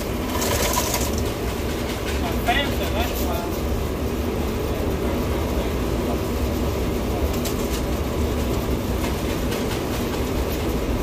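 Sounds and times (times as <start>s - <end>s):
moving vehicle rumble: 0.0s - 11.0s.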